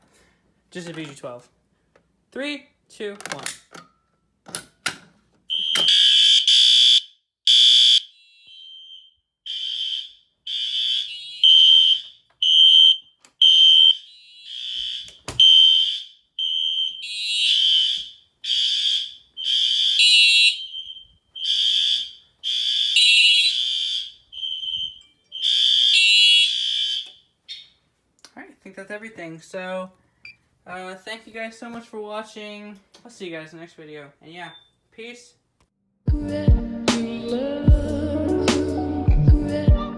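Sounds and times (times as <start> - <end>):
fire alarm horns pulsing: 5.5 - 27.6.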